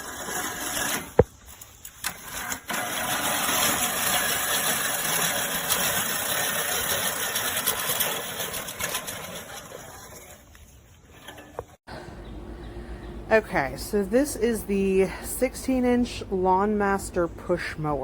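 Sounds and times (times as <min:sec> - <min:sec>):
reel mower whirring clatter: 0:00.0 - 0:11.8.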